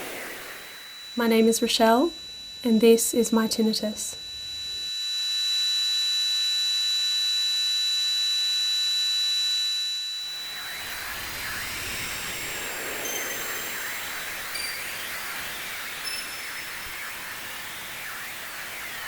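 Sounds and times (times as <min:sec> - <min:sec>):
wavering rushing noise: 0:00.0 - 0:01.4
high-pitched ringing tones: 0:00.0 - 0:19.0.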